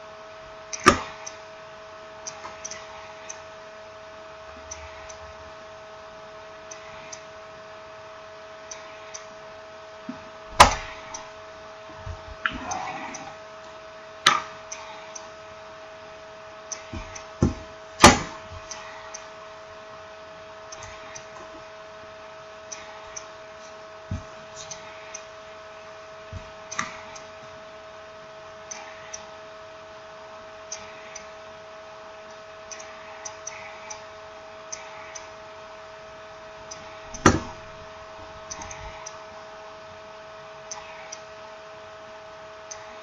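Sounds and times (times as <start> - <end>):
electrical hum: 0.0 - 43.0
sharp knocks: 17.0 - 18.4, 37.1 - 37.6.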